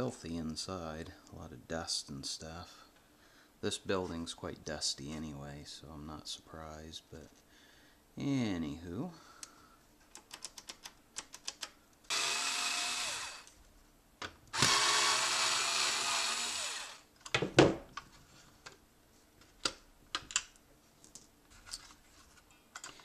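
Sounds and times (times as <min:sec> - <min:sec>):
clicks and knocks of parts: 0:09.4 - 0:11.8, 0:19.4 - 0:23.0
electric screwdriver running: 0:12.1 - 0:13.5, 0:14.6 - 0:17.0.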